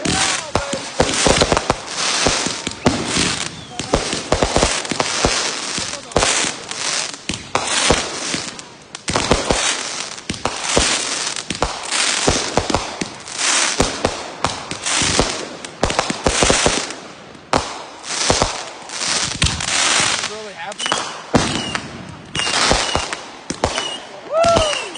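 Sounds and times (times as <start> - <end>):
firework bangs: 0.0 - 24.9
firework hiss: 0.0 - 24.9.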